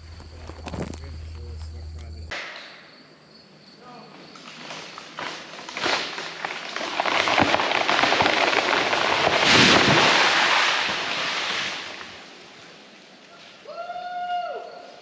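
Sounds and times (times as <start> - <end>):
tree crashing down: 0.0 - 2.3, 4.5 - 12.6
wood and branches snapping: 0.0 - 2.3, 4.5 - 12.1.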